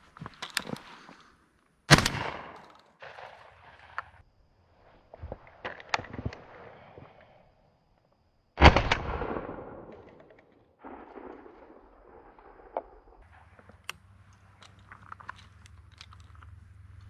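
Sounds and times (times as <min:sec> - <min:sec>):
shotgun shot: 0:01.9 - 0:03.4, 0:08.6 - 0:09.9.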